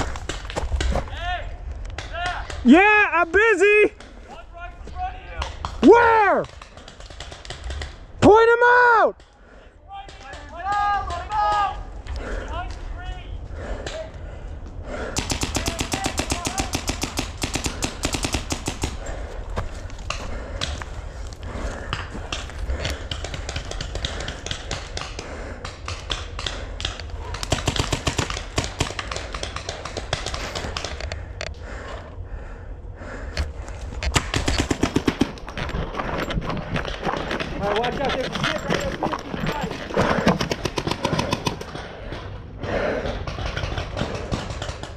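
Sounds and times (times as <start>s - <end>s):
paintball markers firing: 5.4s - 8.1s, 15.2s - 19.2s, 21.8s - 31.3s, 34.1s - 35.5s, 43.1s - 44.9s.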